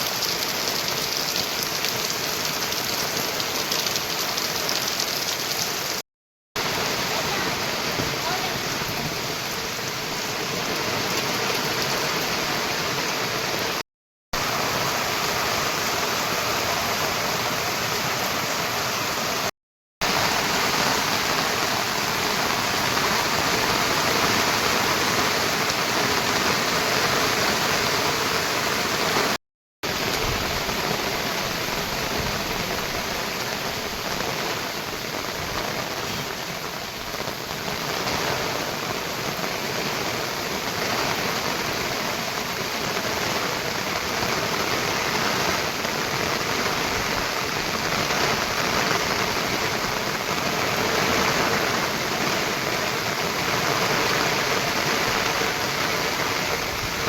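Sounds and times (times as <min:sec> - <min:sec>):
heavy rain: 0:00.0 - 0:06.0, 0:06.6 - 0:13.8, 0:14.4 - 0:57.0.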